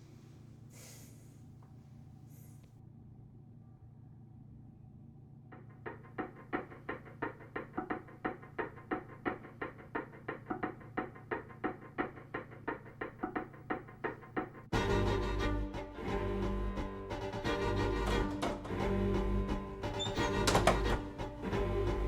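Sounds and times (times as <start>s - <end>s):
rhythmic short knocks: 5.6s - 22.0s
low hum: 14.8s - 22.0s.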